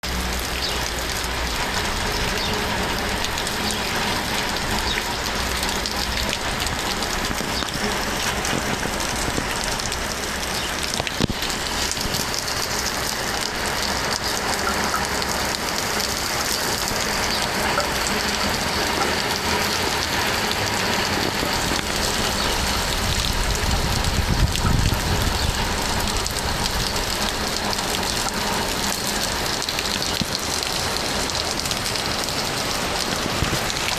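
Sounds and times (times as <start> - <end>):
rain pattering: 0.0 - 33.9.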